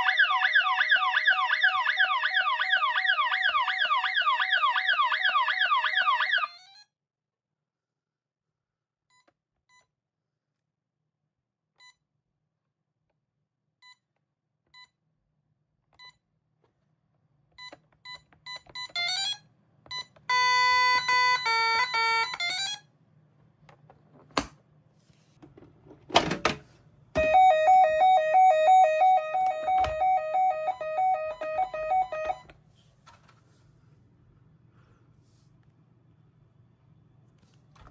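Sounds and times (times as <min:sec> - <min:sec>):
warbling two-tone alarm: 0:00.0 - 0:06.8, 0:27.2 - 0:32.4
keypad beeps: 0:27.2 - 0:32.4
loud two-note beep pattern: 0:27.2 - 0:32.4.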